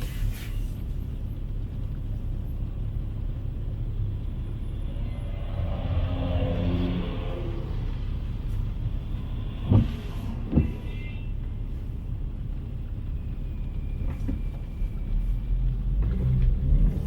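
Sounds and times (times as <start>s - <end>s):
cars passing rumble: 0.0s - 17.0s
vehicle approaching: 2.5s - 10.6s.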